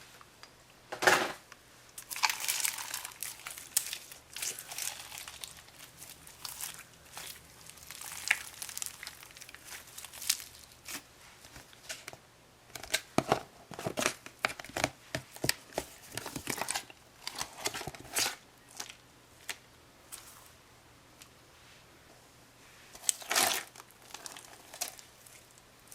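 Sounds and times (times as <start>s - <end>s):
crunchy slime crackling and tearing: 2.0s - 11.0s, 23.0s - 25.9s.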